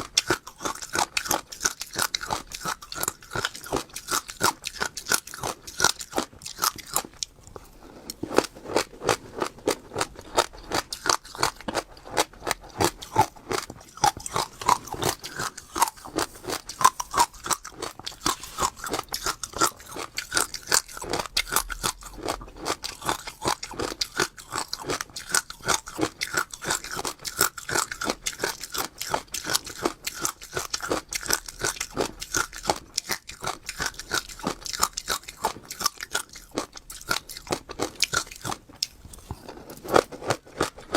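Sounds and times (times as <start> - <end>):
crunchy seeds being chewed: 0.0 - 40.9.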